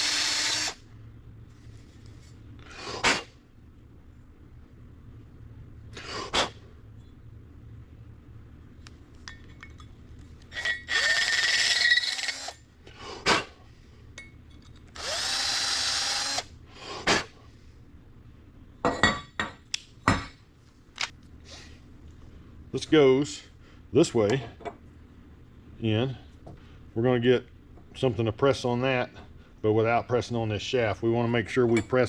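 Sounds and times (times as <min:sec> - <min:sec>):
power drill spinning: 0:00.0 - 0:00.8, 0:10.5 - 0:12.6, 0:14.9 - 0:16.5.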